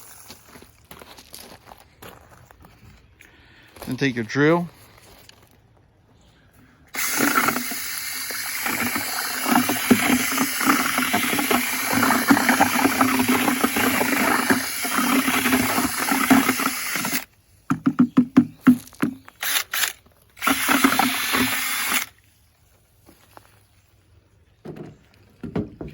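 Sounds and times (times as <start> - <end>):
electric drill mixing concrete: 7.0 - 22.2.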